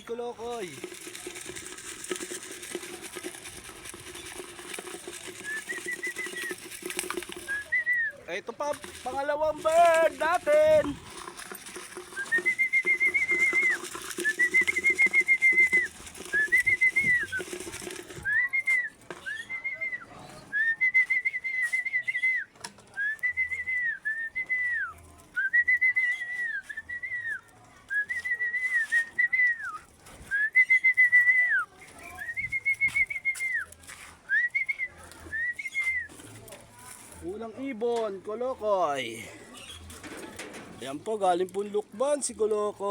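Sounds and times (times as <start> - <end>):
person whistling trilled call: 5.2 - 8.2, 11.9 - 33.7, 34.3 - 36.1.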